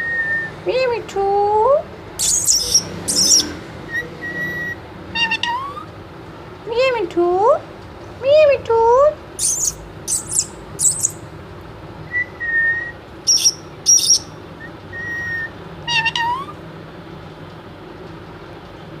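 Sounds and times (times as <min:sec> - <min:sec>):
parrot screeching: 0:02.2 - 0:05.9, 0:09.4 - 0:11.2, 0:13.3 - 0:16.6
parrot whistling: 0:02.2 - 0:05.9, 0:09.4 - 0:11.2, 0:12.1 - 0:16.6.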